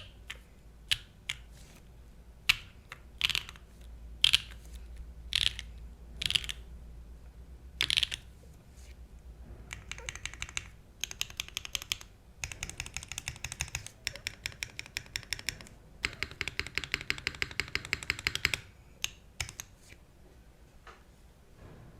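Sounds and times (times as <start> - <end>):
typing on mechanical keyboard: 2.5 - 4.6, 5.3 - 6.6, 7.8 - 8.3, 9.7 - 19.7.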